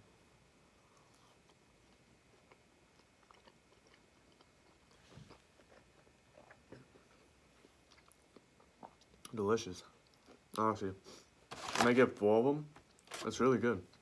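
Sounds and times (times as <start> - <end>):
faint chewing: 0.8 - 9.4.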